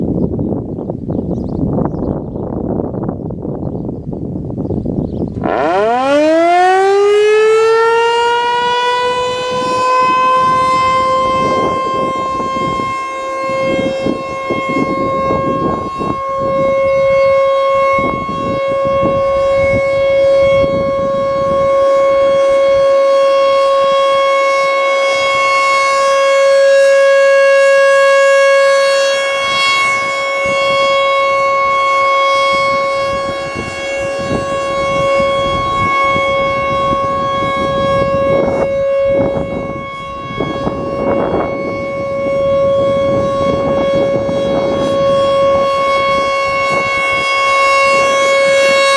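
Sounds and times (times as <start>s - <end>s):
rotating warning siren: 0.0s - 48.9s.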